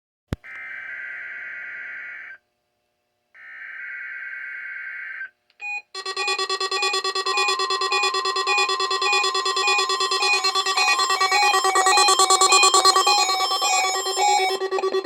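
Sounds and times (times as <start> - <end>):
buzzy digital data tone: 6.0 - 15.0
steady electronic tone: 6.0 - 15.0.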